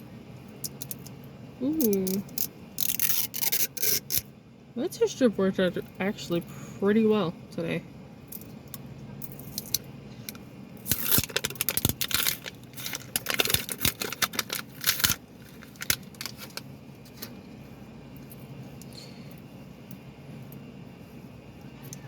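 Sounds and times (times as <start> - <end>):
plastic wrapping crinkling: 10.8 - 17.2.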